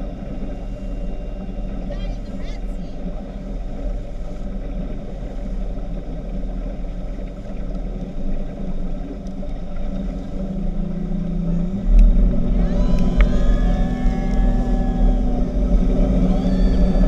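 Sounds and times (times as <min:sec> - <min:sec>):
speedboat engine droning: 0:00.0 - 0:17.0.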